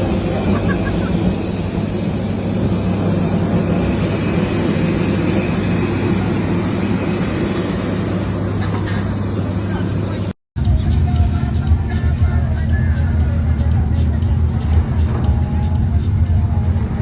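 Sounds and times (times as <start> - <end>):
engine droning: 0.0 - 17.0.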